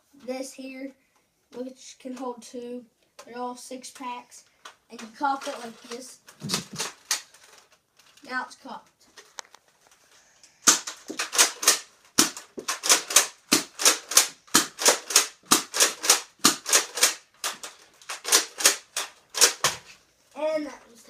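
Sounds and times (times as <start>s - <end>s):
toy blaster mechanism clacking: 5.0s - 7.6s, 10.6s - 19.9s.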